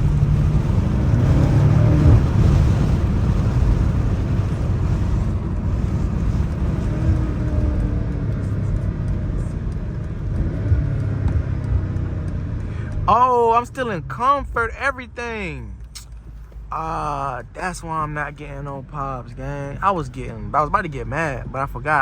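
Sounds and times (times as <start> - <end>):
tyre spray on wet road: 0.0 - 9.2
rain: 0.0 - 13.1
car engine cruising: 0.0 - 22.0.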